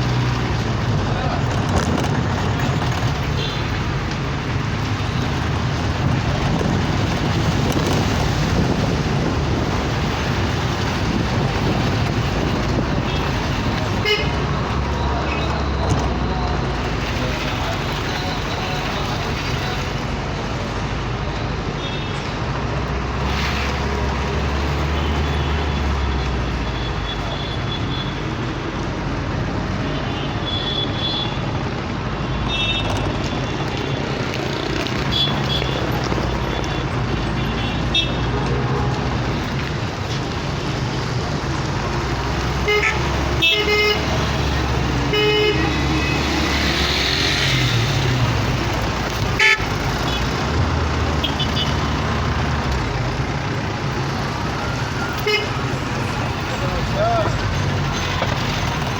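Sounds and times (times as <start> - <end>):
cars passing: 0.0 - 58.9
car horn toots: 42.6 - 44.2, 49.3 - 50.2, 55.2 - 55.6.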